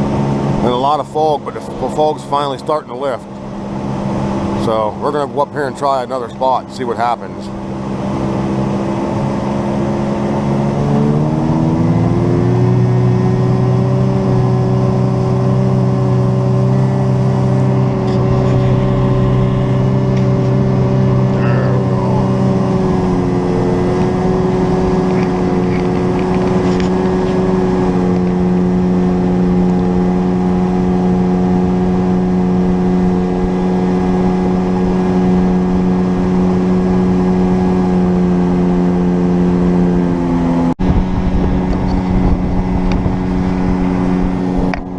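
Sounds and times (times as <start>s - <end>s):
boat engine running: 0.0s - 44.9s.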